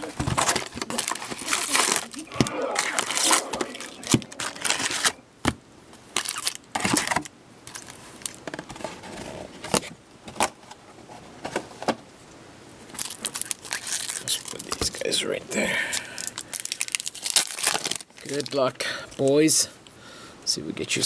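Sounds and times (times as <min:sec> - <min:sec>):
cardboard and plastic rustling: 0:00.0 - 0:02.2.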